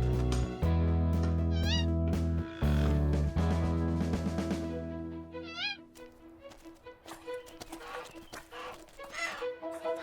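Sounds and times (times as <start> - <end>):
background music of sustained chords: 0.0 - 7.0, 9.4 - 10.0.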